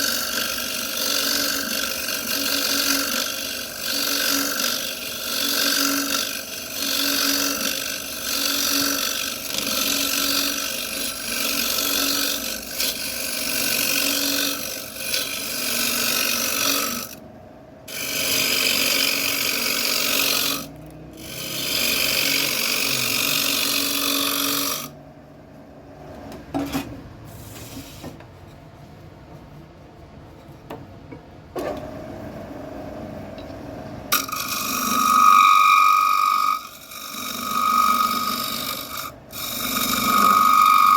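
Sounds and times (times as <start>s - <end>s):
lathe tool scraping wood: 0.0s - 17.2s, 17.9s - 25.0s, 34.1s - 40.9s.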